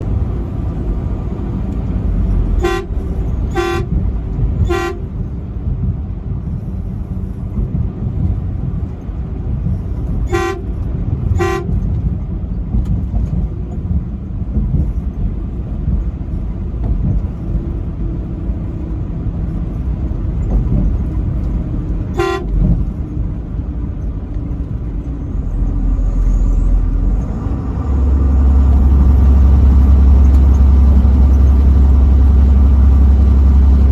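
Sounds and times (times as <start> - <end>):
truck engine and road noise: 0.0 - 33.9
truck horn toots: 2.5 - 5.3, 10.2 - 11.8, 22.1 - 22.8.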